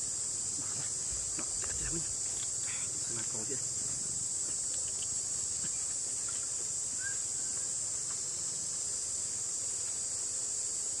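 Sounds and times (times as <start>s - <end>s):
insects droning: 0.0s - 11.0s
faint chirp: 5.6s - 7.8s.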